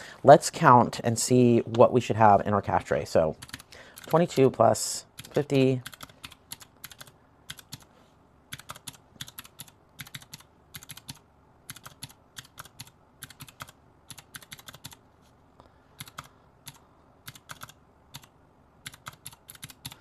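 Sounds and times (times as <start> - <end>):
calculator keys clicking: 3.4 - 4.5, 5.2 - 7.9, 8.5 - 15.0, 16.0 - 20.0.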